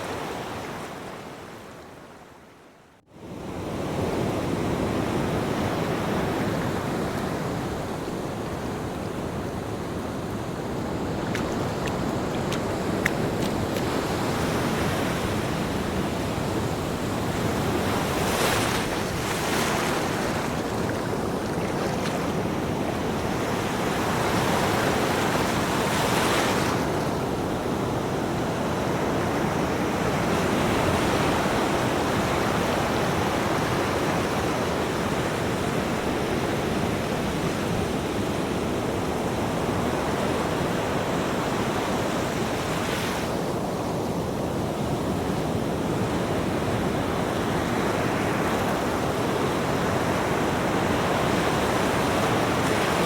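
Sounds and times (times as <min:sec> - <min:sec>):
ocean waves breaking: 0:05.7 - 0:28.2.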